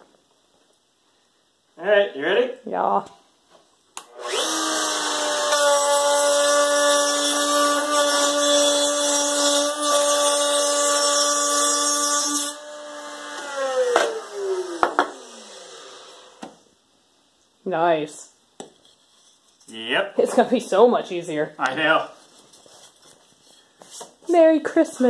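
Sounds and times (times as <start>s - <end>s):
router bit cutting wood: 4.0s - 16.4s
wood router whining: 4.0s - 16.6s.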